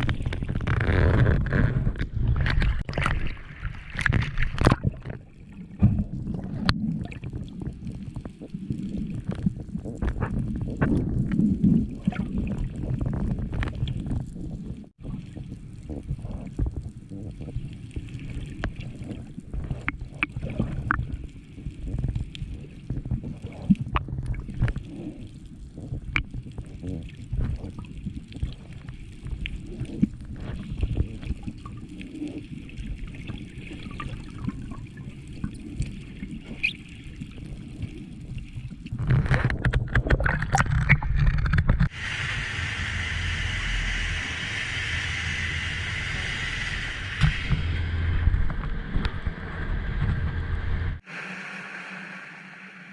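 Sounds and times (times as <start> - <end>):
muffled water sloshing and gurgling: 0.0 - 51.8
water rushing and splashing: 2.4 - 9.5, 41.9 - 49.3
steady hiss: 41.9 - 48.3.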